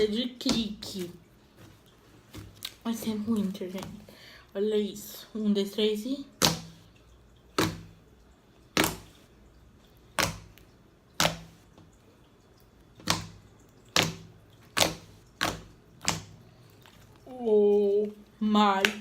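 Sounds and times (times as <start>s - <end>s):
slime popping: 10.2s - 11.6s, 13.0s - 17.4s.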